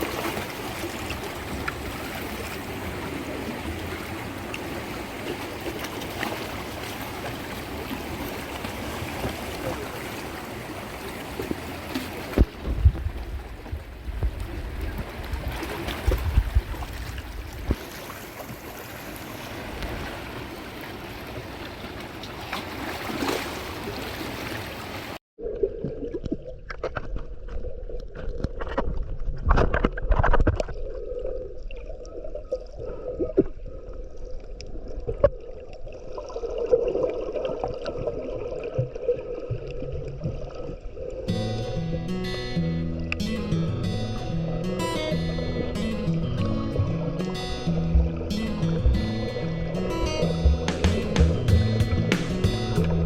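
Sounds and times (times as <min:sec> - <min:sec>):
rushing water: 0:00.0 - 0:25.2, 0:34.4 - 0:53.0
muffled gurgling water: 0:25.4 - 0:53.0
low thumps on microphone: 0:47.7 - 0:49.4, 0:50.2 - 0:53.0.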